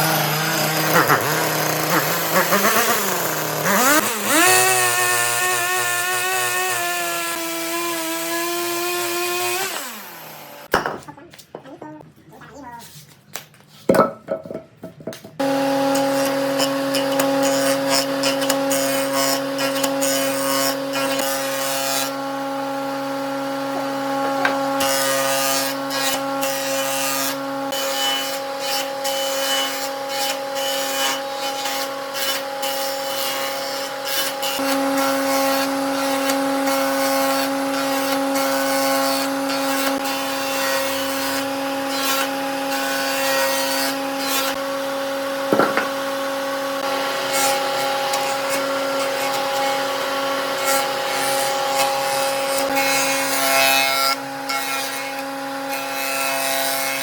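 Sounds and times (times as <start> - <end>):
power tool motor hum: 0.0 - 10.7, 15.4 - 27.9, 29.7 - 56.7
tool scraping wood: 0.0 - 10.7, 45.4 - 46.2.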